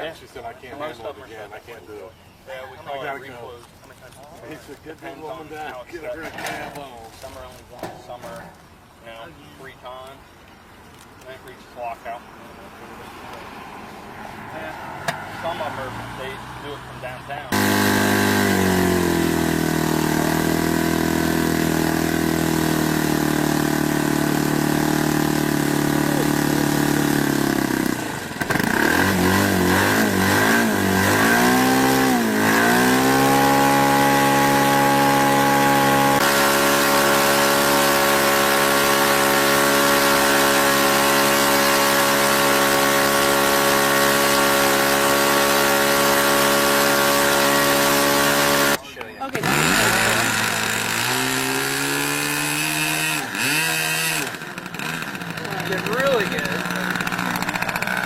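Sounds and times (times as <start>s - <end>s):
engine running: 14.5s - 58.0s.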